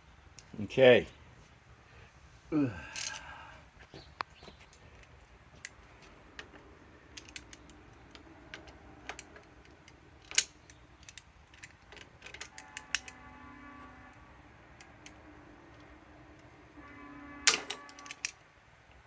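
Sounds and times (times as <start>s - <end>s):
hand tools clicking and clattering: 2.8s - 3.5s, 4.7s - 13.2s, 17.4s - 18.4s.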